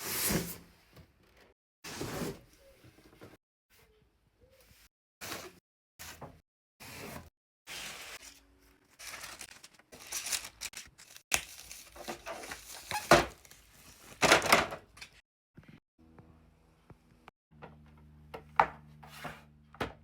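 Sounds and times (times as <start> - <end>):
cardboard and plastic rustling: 8.0 - 14.8.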